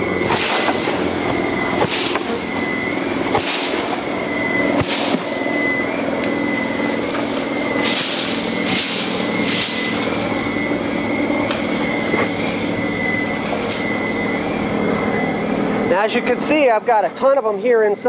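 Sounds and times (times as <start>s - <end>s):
bee swarm buzzing: 0.0s - 16.6s.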